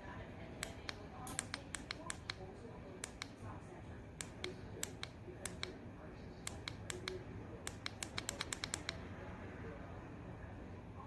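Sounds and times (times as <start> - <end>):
faint low hum: 0.0 - 11.0
sharp clicks: 0.6 - 2.4, 3.0 - 3.4, 4.2 - 5.8, 6.5 - 9.0.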